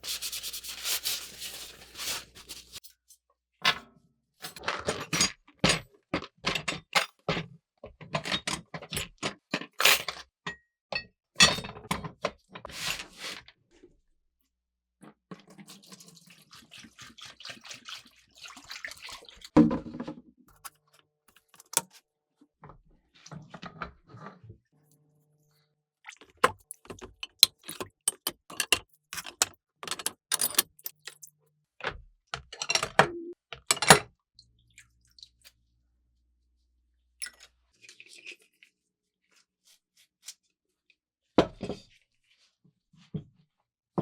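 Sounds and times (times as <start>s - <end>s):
metal scraping: 26.4s - 31.3s
metal tools clinking and knocking: 26.4s - 31.3s.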